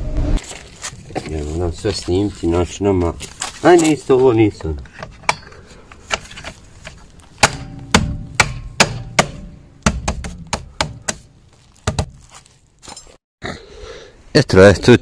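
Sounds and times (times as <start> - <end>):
metallic knocks and clanks: 4.6 - 6.6.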